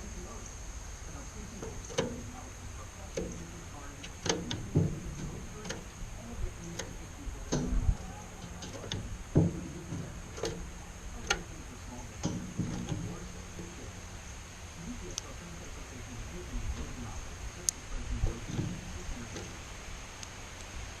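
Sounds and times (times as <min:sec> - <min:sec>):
faint steady hum: 0:00.0 - 0:21.0
sharp clicks and taps: 0:01.5 - 0:14.0.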